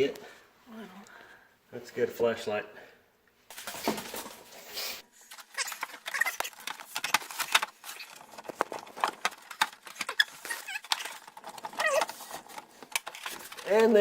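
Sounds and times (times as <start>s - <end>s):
snorkel parts clicking and rattling: 5.3s - 14.0s
short squeaks: 5.5s - 6.6s, 10.0s - 12.2s.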